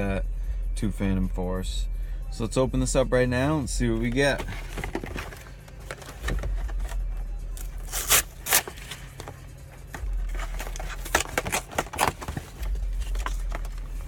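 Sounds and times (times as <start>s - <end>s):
packaging ripping: 7.6s - 9.4s, 10.3s - 13.8s.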